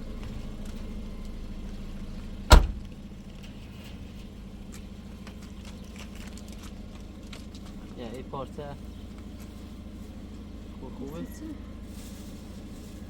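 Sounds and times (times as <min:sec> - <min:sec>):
steady low hum: 0:00.0 - 0:11.0
loud bang: 0:02.5 - 0:02.9.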